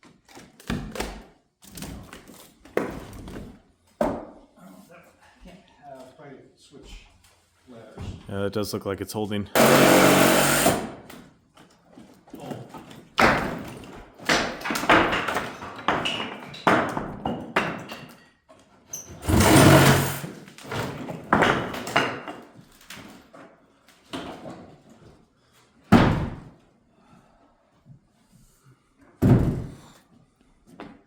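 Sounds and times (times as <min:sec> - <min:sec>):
heavy blows on wooden staircase: 0:19.2 - 0:20.2.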